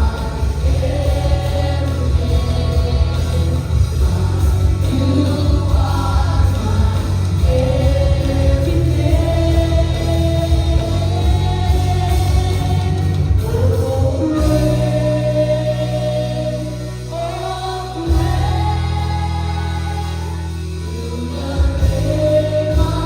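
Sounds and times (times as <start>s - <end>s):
people singing worship song: 0.0s - 23.0s
steady bass: 0.0s - 23.0s.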